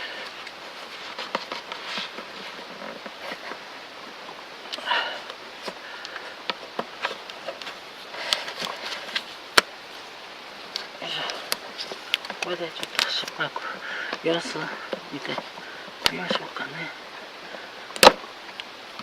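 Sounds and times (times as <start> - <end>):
hands clicking and rustling: 10.7 - 16.4.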